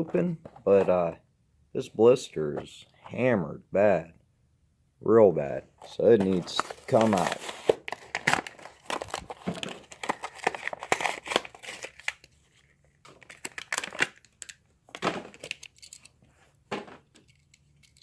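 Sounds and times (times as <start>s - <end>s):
blister pack tearing and crinkling: 6.4s - 12.4s, 13.1s - 14.6s.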